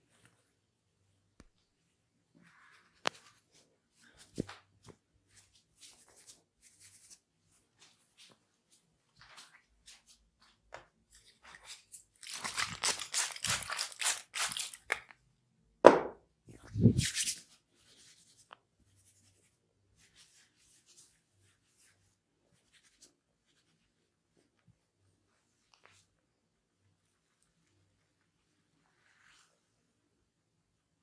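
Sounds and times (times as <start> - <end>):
hair crackling: 12.2 - 15.0.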